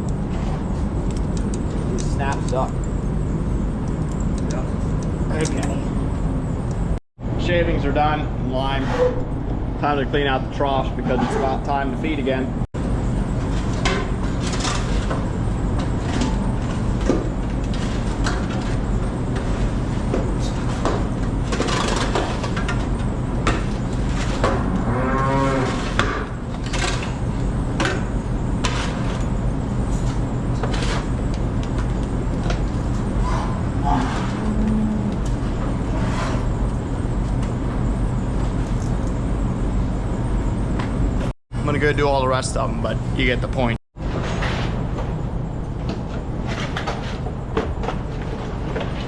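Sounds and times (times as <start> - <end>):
low machine hum: 0.0 - 49.0
cows mooing: 24.5 - 26.3, 33.3 - 35.6.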